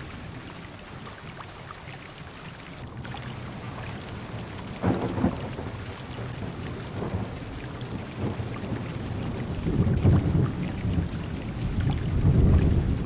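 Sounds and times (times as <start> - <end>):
heavy rain on car: 0.0 - 1.9, 2.5 - 13.0
thunder rumbling: 3.3 - 13.0.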